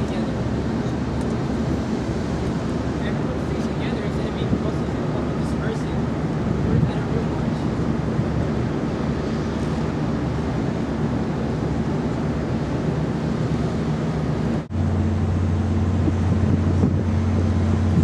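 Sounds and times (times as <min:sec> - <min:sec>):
low engine drone: 0:00.0 - 0:18.0
low hum: 0:00.0 - 0:18.0
wind noise on microphone: 0:06.0 - 0:18.0.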